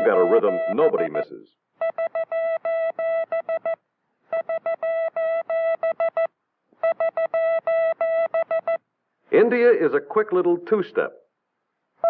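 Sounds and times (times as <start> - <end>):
morse code beeping tone: 0.0 - 8.8.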